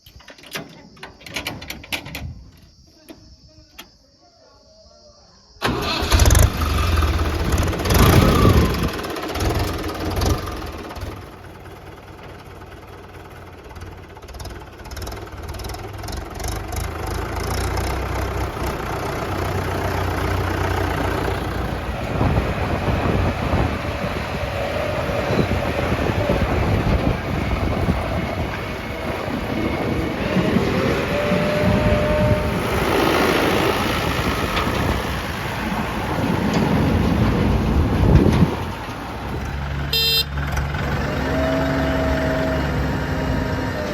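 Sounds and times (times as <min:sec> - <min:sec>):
diesel machinery engines running: 0:05.6 - 0:43.9.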